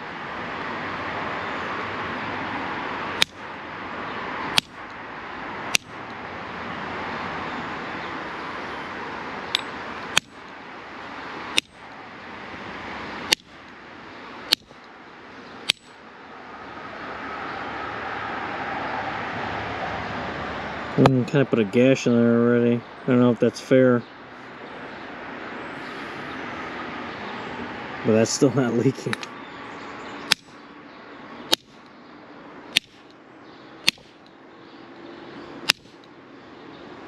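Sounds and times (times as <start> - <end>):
pliers striking copper pipe: 9.6 - 10.4, 11.6 - 11.8, 13.3 - 13.5, 14.5 - 14.8, 15.7 - 15.9, 32.8 - 33.0, 33.8 - 34.2, 35.7 - 36.0.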